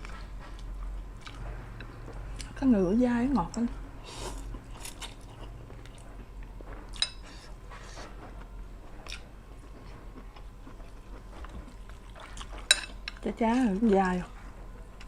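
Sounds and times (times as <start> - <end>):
person chewing: 0.0 - 2.6, 4.1 - 6.2, 6.9 - 13.2.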